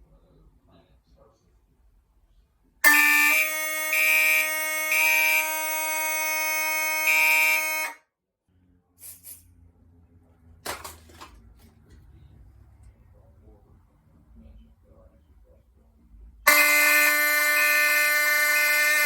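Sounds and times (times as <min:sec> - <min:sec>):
higher pulsing horn tone: 0:02.8 - 0:08.0, 0:16.5 - 0:19.0
fire alarm horns: 0:02.8 - 0:08.1, 0:16.5 - 0:19.0.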